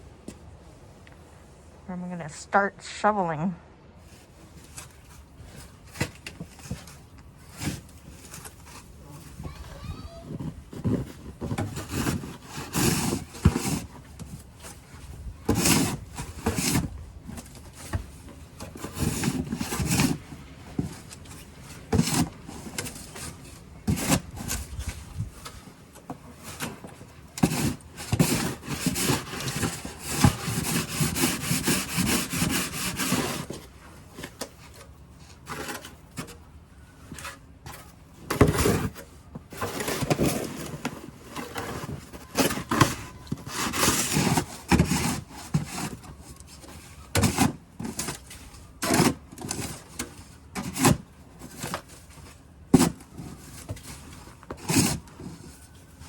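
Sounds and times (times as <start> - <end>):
snow shovel scraping snow: 9.7 - 13.9, 27.4 - 33.6, 39.5 - 45.9.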